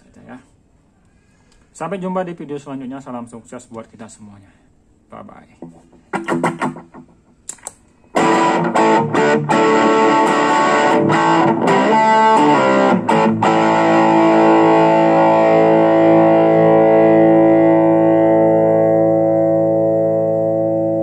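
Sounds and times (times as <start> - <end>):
distorted electric guitar chords: 6.0 - 7.2, 8.1 - 21.0.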